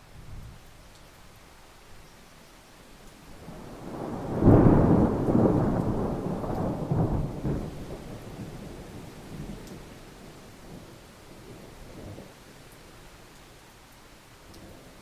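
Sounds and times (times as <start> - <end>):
rain hiss: 0.0 - 15.0
thunder clap and rumble: 3.4 - 10.0.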